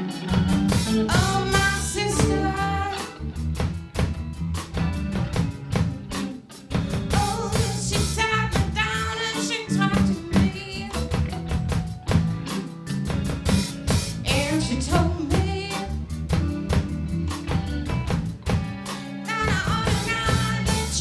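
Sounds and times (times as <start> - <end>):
rock band playing: 0.0 - 21.0
drum beat: 0.3 - 2.6, 3.5 - 21.0
person singing: 0.9 - 3.2, 7.1 - 11.2, 14.3 - 16.6, 19.2 - 21.0.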